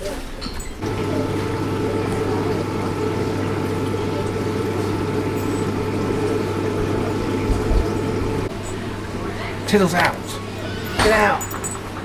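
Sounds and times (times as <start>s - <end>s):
water pump humming: 0.8s - 11.3s
running water: 0.8s - 12.0s.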